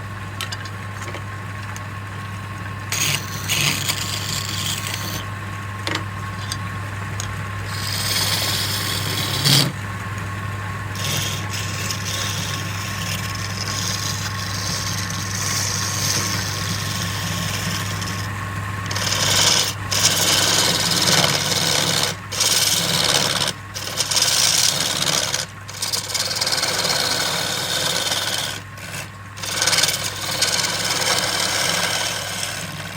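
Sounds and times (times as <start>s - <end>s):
wood lathe motor hum: 0.0s - 32.9s
tool scraping spinning wood: 2.8s - 32.9s.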